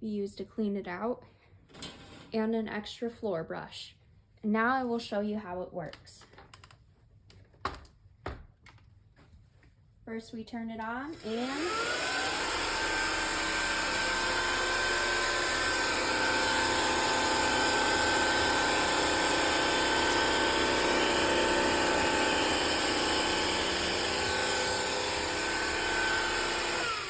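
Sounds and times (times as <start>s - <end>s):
floor cleaner motor whining: 11.1s - 27.0s.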